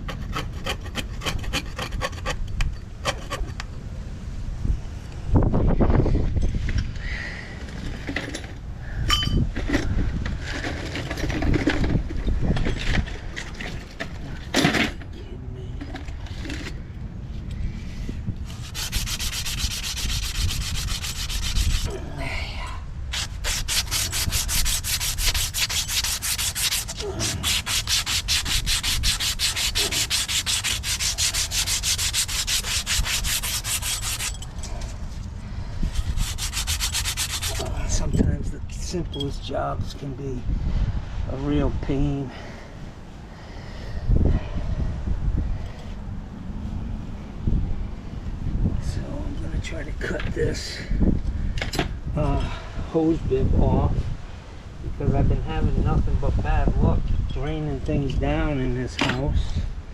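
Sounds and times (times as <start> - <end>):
scraping on a hard surface: 18.4 - 22.0, 23.1 - 38.1.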